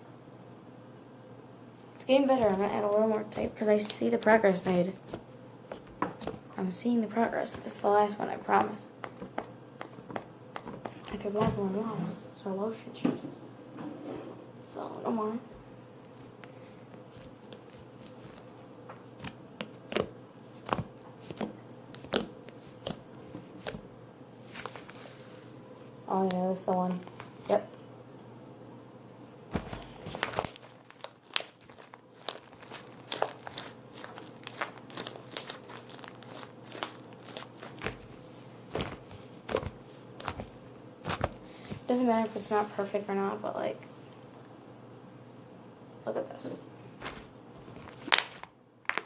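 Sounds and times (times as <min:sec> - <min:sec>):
slime squished by hand: 0:17.0 - 0:23.9, 0:29.5 - 0:41.9.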